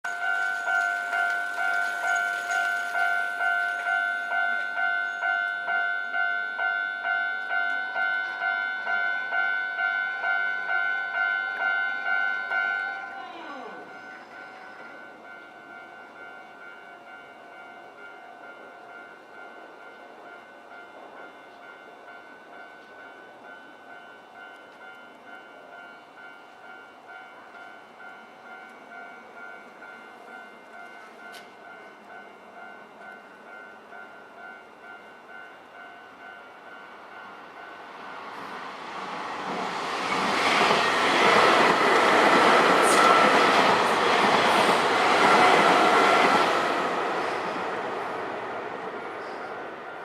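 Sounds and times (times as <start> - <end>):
level-crossing warning bell: 0.0 - 50.0
train passing: 0.0 - 50.0.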